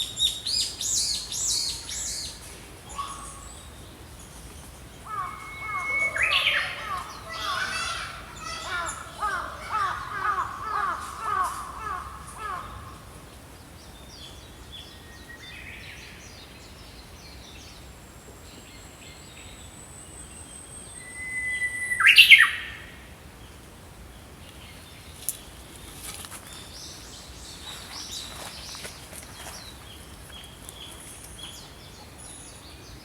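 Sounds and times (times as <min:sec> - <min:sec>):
songbirds chirping: 0:00.0 - 0:33.0
loud sharp bird call: 0:05.1 - 0:13.0.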